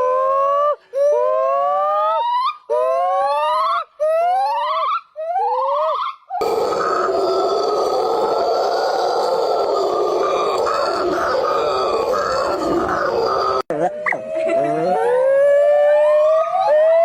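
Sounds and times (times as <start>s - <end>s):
primate roaring call: 6.4s - 16.0s.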